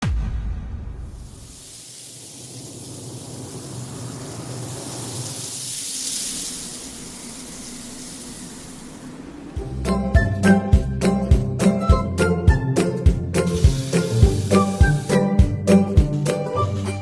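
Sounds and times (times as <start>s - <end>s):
coffee maker hissing steam: 1.4s - 9.6s, 13.4s - 15.3s.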